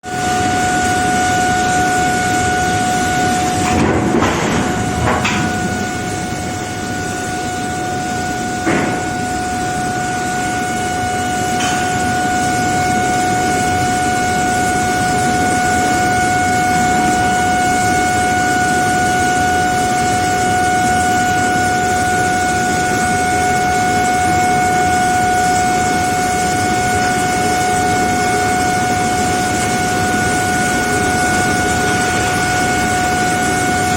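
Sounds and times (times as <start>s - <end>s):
furnace high-pitched hum: 0.0s - 33.9s
foundry noise: 3.6s - 6.4s, 8.6s - 9.2s.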